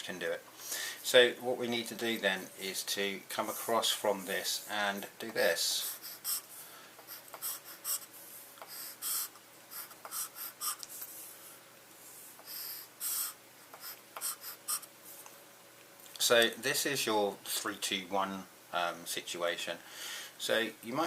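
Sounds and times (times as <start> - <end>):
faint steady hum: 0.0 - 21.0
pen scratching on paper: 13.8 - 14.9.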